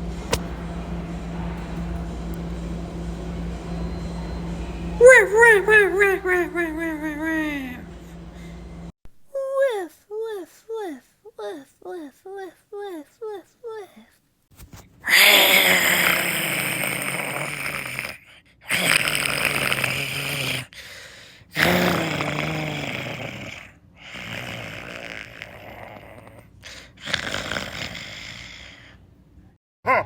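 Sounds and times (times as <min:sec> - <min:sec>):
person imitating snoring: 0:15.1 - 0:20.8, 0:21.5 - 0:29.0.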